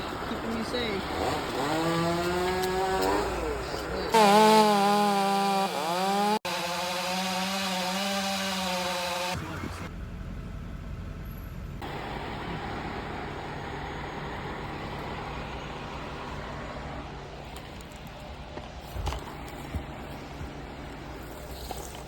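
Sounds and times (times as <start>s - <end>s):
large engine running: 9.2s - 18.5s.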